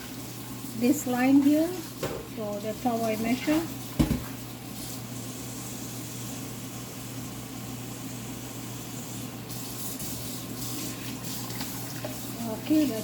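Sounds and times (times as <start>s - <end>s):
water pouring into pot: 10.4s - 12.9s.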